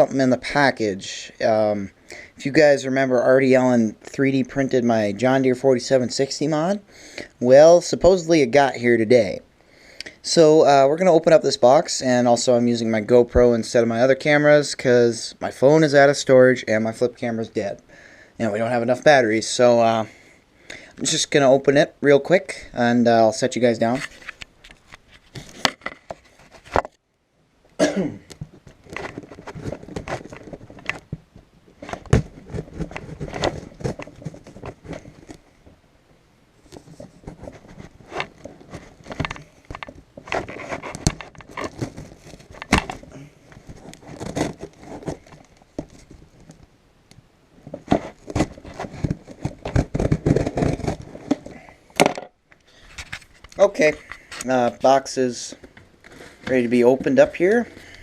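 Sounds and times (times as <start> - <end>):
scraping rustles: 23.7 - 26.9, 28.4 - 35.8, 36.6 - 46.7, 47.6 - 51.7, 52.7 - 58.0
cardboard box being handled: 31.8 - 35.4, 36.7 - 46.5, 47.7 - 51.5.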